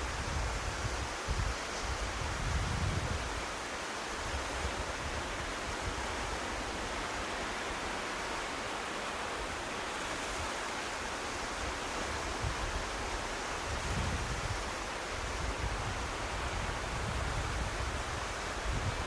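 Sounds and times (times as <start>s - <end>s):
wind buffeting microphone: 0.0s - 3.4s, 13.7s - 19.0s
sea surf: 0.0s - 19.0s.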